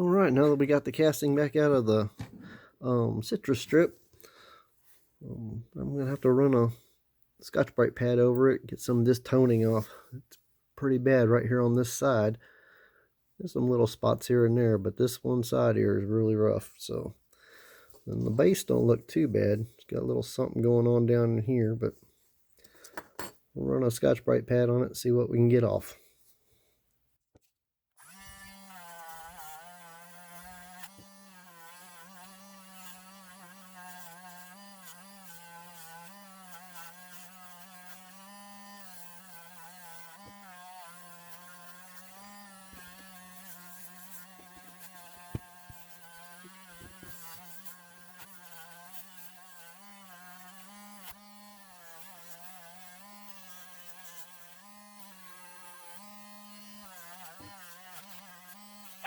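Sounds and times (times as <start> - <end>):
power tool motor buzzing: 28.0 - 59.0.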